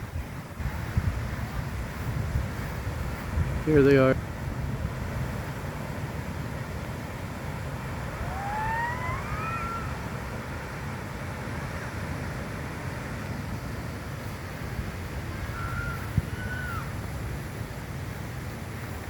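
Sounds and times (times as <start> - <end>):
wind on microphone: 0.0 - 19.0
rising high call: 8.1 - 10.2
short high calls: 15.3 - 17.0.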